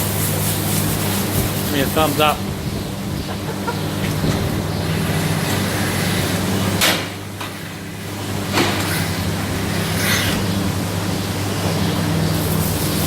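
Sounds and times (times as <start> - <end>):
milking machinery humming and hissing: 0.0 - 13.0.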